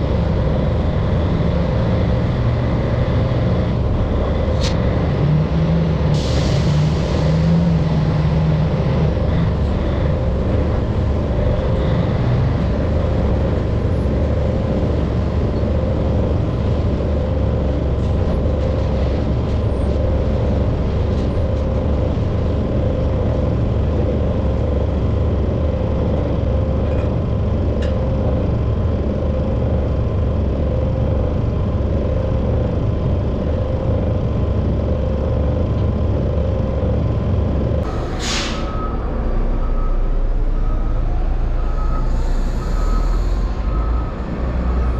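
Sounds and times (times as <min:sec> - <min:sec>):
loader engine droning: 0:00.0 - 0:44.9.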